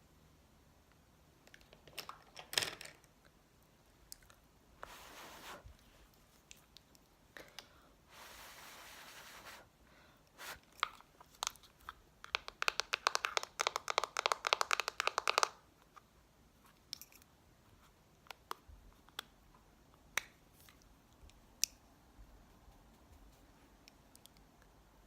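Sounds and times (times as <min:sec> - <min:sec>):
makeup items clicking: 0:10.8 - 0:15.6.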